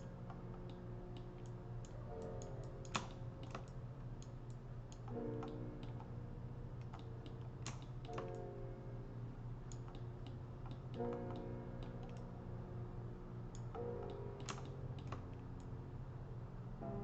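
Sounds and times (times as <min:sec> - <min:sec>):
soft background music: 0:00.0 - 0:17.0
computer keyboard clicks: 0:00.3 - 0:06.1, 0:06.8 - 0:08.4, 0:09.7 - 0:12.3, 0:13.5 - 0:15.7
computer mouse clicks: 0:00.3 - 0:06.1, 0:06.8 - 0:08.4, 0:09.7 - 0:12.3, 0:13.5 - 0:15.7.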